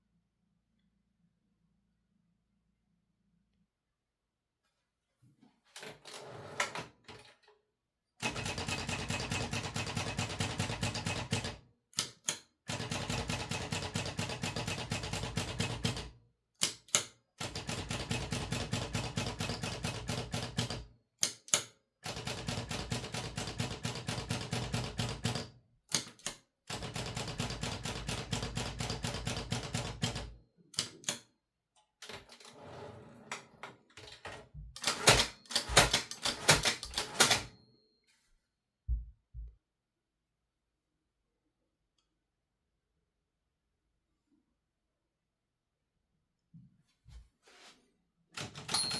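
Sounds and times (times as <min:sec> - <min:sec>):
manual typewriter keystrokes: 0:08.2 - 0:31.3, 0:34.8 - 0:37.6, 0:48.4 - 0:48.9.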